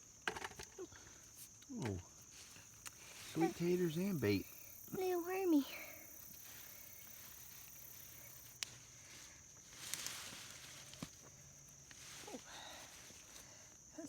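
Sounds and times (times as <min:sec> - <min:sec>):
high insect drone: 0:00.0 - 0:14.0
soil rustling: 0:01.0 - 0:14.0.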